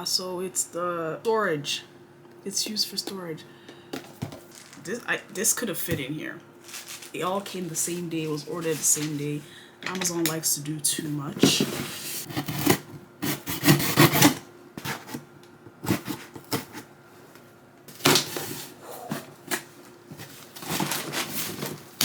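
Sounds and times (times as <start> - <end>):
cardboard rubbing and rustling: 6.6 - 9.4, 18.0 - 22.0.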